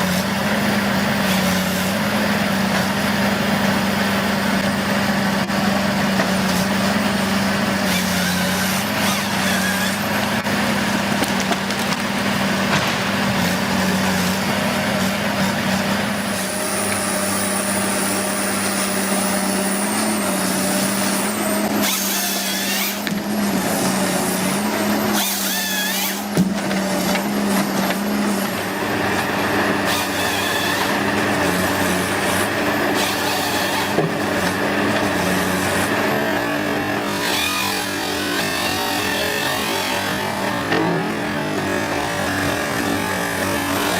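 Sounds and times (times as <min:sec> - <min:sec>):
machinery humming and hissing: 0:00.0 - 0:43.9.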